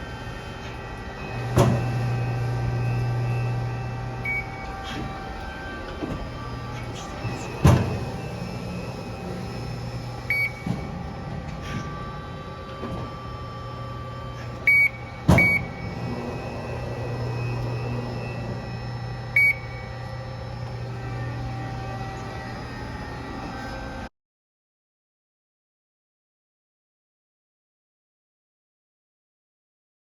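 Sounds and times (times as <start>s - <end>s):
hydraulic pump humming: 0.0s - 24.1s
machine clunks: 0.2s - 23.8s
short beeps: 4.2s - 5.1s, 10.2s - 10.8s, 14.7s - 16.2s, 19.3s - 20.0s.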